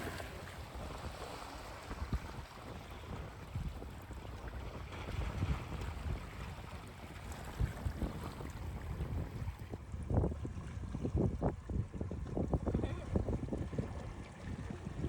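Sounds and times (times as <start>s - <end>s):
sea waves washing on shore: 0.0s - 8.8s
wind buffeting microphone: 0.0s - 15.0s.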